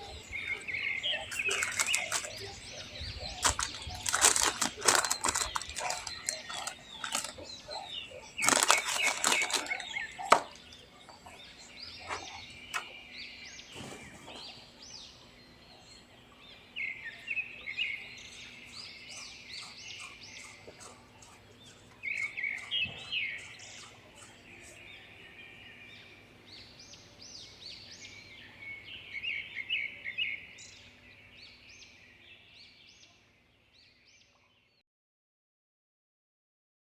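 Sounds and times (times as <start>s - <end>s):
birds chirping: 0.0s - 34.8s
loud rustling and crackling: 1.3s - 2.5s, 3.4s - 7.5s, 8.4s - 10.6s.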